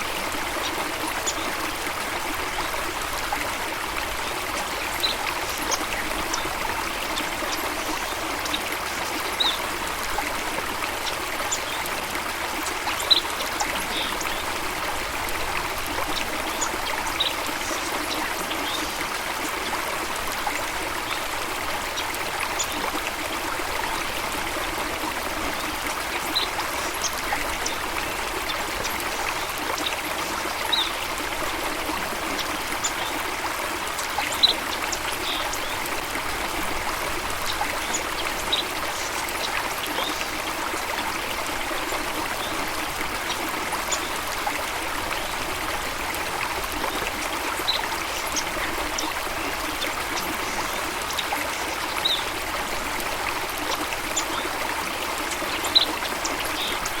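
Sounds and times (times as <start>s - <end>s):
stream flowing and splashing: 0.0s - 57.0s.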